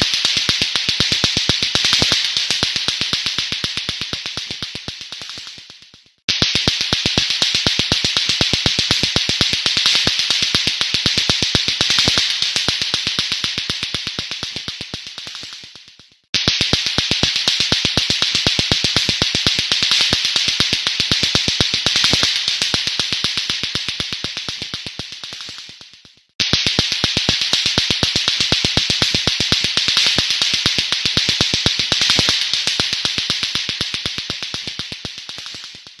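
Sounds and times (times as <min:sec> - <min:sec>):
clacker balls knocking together: 0:00.0 - 0:36.0
high-pitched hiss: 0:00.0 - 0:36.0
steady high hiss: 0:26.7 - 0:35.8.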